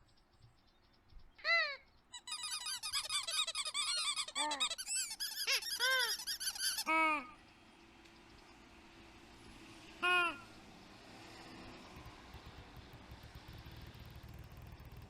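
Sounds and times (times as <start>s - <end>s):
cartoon birds chirping: 1.3s - 7.4s.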